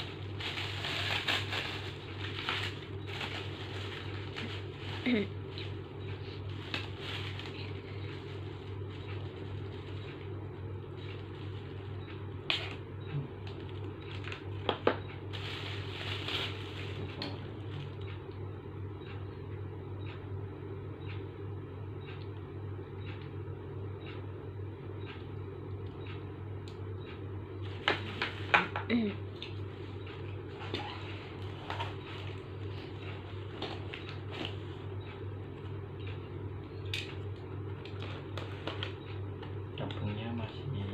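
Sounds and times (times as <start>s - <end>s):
faint regular ticking: 21.0s - 27.4s.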